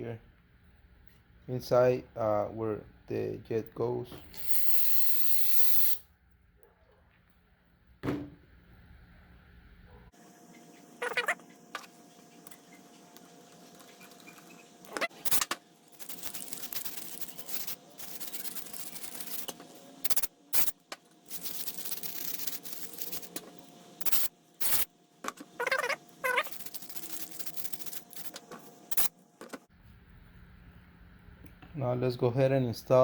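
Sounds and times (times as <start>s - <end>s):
aerosol spray hissing: 4.4s - 6.0s.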